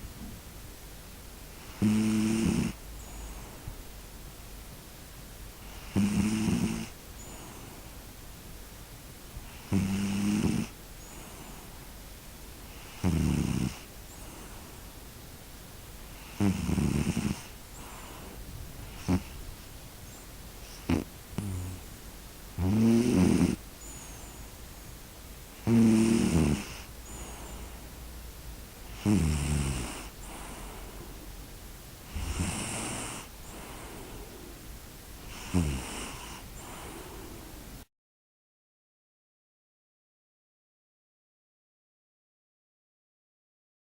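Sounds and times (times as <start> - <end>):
quiet breathing: 1.4 - 3.9, 5.4 - 37.8
person snoring: 1.7 - 2.8, 5.8 - 6.9, 9.6 - 10.7, 12.9 - 13.8, 16.2 - 17.5, 19.0 - 19.4, 20.7 - 21.8, 22.6 - 23.6, 25.6 - 27.6, 29.0 - 30.8, 32.1 - 34.5, 35.3 - 37.4
rattling snore: 19.0 - 19.4, 22.6 - 23.6, 25.6 - 27.2, 29.0 - 30.1, 32.1 - 33.3, 35.4 - 36.4.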